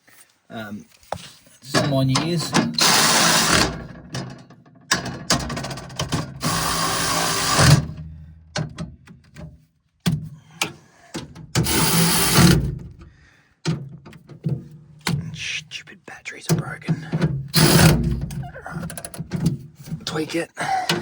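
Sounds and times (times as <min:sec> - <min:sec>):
cordless power tool whirring: 0:02.8 - 0:03.8, 0:06.4 - 0:07.9, 0:11.6 - 0:12.8, 0:17.6 - 0:18.2.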